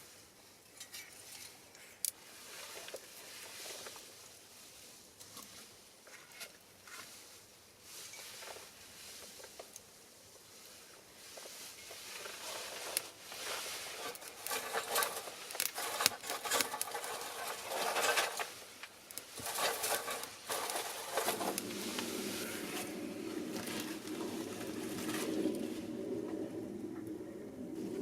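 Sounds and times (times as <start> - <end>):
fire crackling and popping: 11.8 - 28.0
steady low sound: 21.3 - 28.0.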